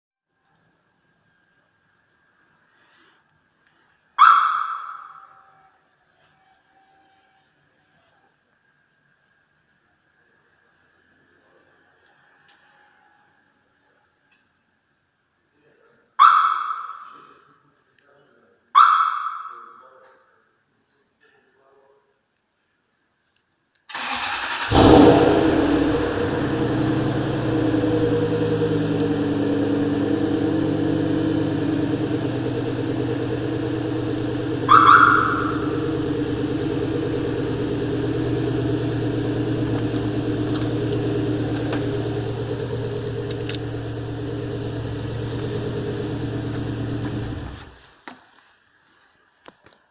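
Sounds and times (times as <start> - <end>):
engine starting and idling: 23.9 - 47.8.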